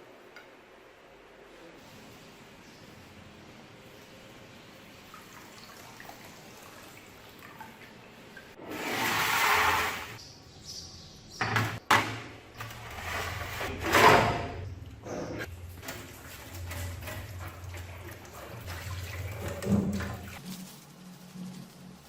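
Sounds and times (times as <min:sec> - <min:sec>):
water gushing and splashing: 0:16.0 - 0:20.4.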